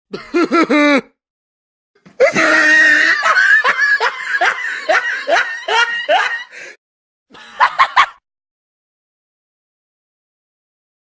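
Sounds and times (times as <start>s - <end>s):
person laughing high-pitched: 0.2s - 1.2s, 2.2s - 6.6s.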